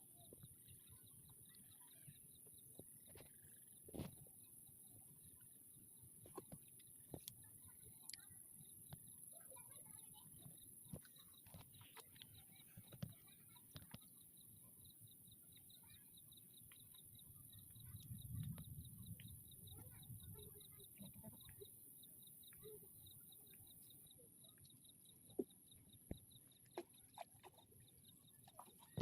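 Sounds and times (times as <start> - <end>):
faint repeating chirp: 0.0 - 29.0.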